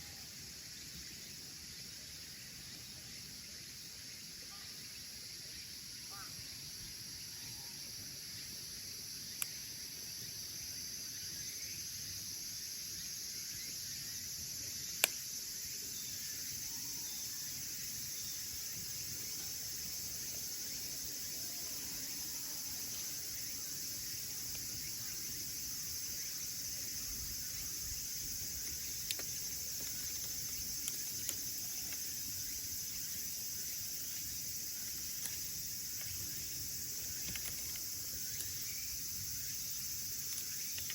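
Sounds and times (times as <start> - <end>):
high-pitched hiss: 0.0 - 40.9
wood popping: 28.5 - 32.1, 37.0 - 38.6.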